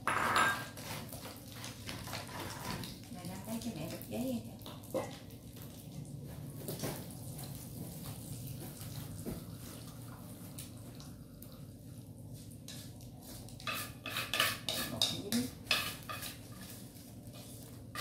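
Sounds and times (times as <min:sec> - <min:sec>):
dishes and utensils clattering: 0:00.0 - 0:01.0, 0:13.6 - 0:16.8
low background hum: 0:00.0 - 0:18.0.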